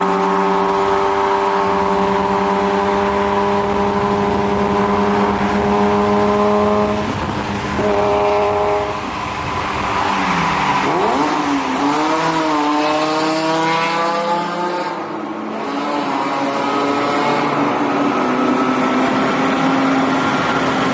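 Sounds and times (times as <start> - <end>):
car exhaust revving: 0.0 - 14.8.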